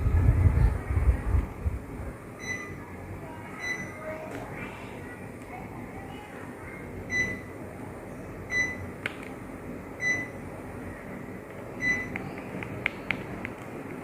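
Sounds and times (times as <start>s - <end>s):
steady background hum: 0.0s - 14.0s
air conditioner short high beeps: 2.3s - 4.2s, 6.9s - 7.7s, 8.4s - 9.0s, 9.9s - 10.6s, 11.7s - 12.4s.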